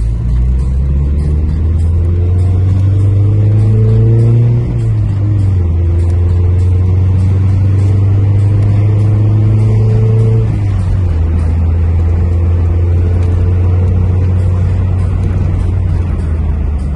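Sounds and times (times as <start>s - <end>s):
car engine running: 0.0s - 16.9s.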